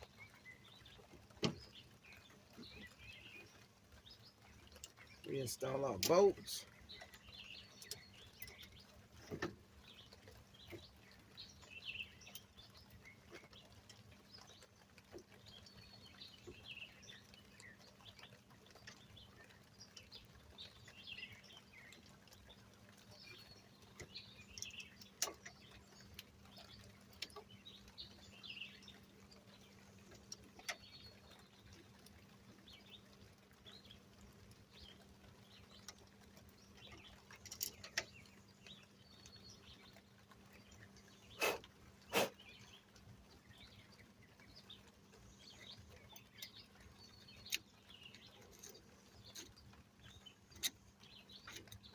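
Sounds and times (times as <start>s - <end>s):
small birds chirping: 0.0s - 51.9s.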